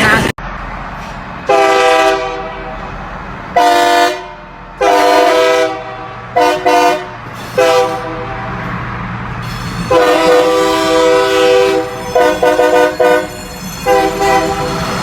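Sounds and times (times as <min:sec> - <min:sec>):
horn blasts: 0:01.5 - 0:02.8, 0:03.6 - 0:08.7, 0:09.9 - 0:14.8.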